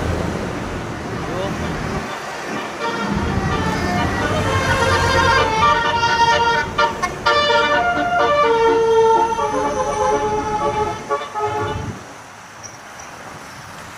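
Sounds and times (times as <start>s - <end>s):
bus rumble: 0.0s - 13.9s
bus horn playing a tune: 2.0s - 12.0s.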